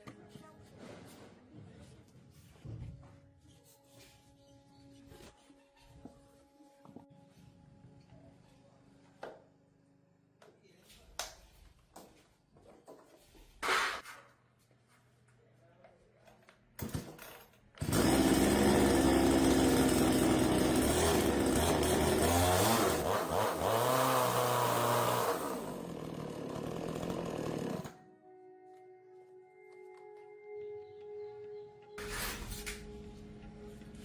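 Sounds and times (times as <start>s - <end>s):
chainsaw engine running: 17.8s - 28.0s.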